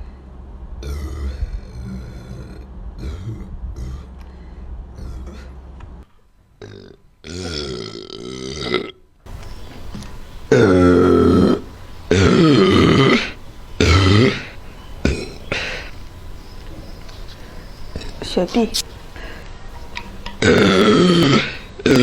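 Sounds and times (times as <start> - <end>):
woman burping: 6.6 - 9.0, 10.5 - 15.9, 20.3 - 22.0.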